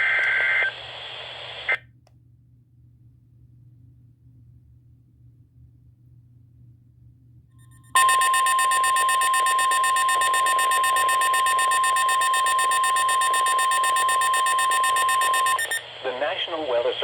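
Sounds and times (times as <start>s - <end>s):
faint receiver hum: 0.0s - 2.3s, 8.0s - 17.0s
loud steady alarm tone: 8.0s - 15.8s.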